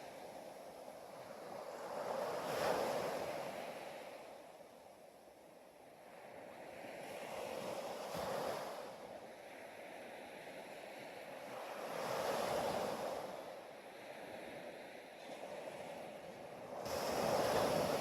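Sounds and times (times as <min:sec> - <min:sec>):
ocean waves washing in: 0:05.9 - 0:18.0.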